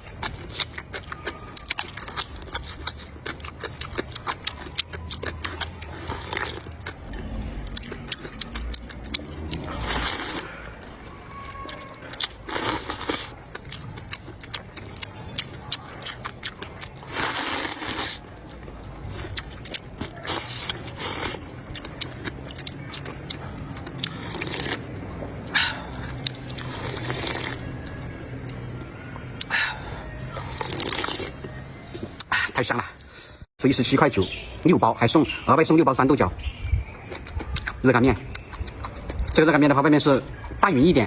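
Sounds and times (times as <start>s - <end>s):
loud crunching: 0.0s - 29.0s
person chewing food: 0.0s - 33.2s, 36.5s - 40.6s.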